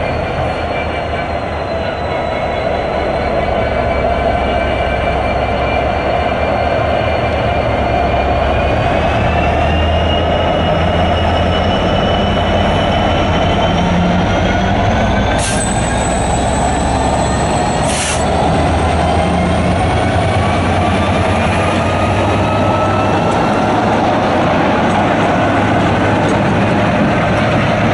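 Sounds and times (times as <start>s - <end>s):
train heavy rumble: 0.0s - 27.9s
thin high squeal: 15.4s - 18.4s.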